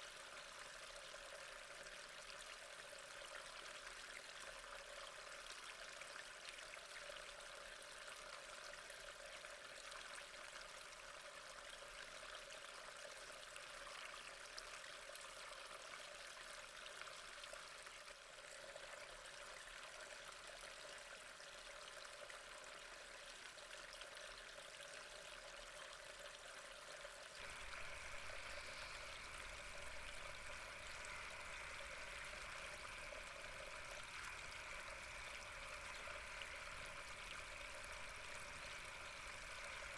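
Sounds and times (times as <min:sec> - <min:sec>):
trickling water: 0:00.0 - 0:39.9
low hum: 0:27.4 - 0:39.9.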